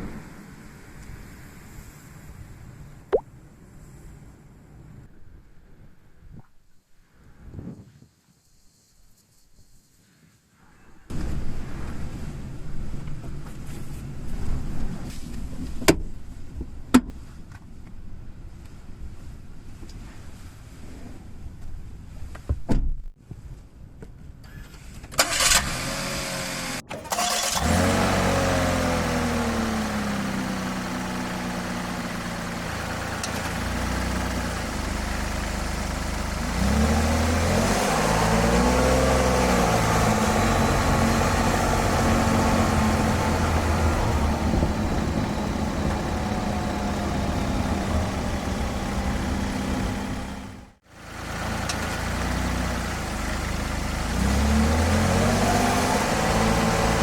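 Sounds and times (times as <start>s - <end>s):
van engine starting and revving: 25.1s - 57.0s.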